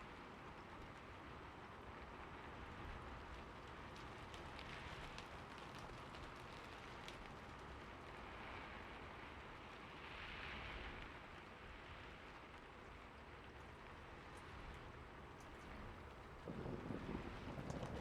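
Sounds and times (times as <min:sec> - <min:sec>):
soft steady rain: 0:00.0 - 0:18.0
raindrops ticking: 0:15.4 - 0:18.0.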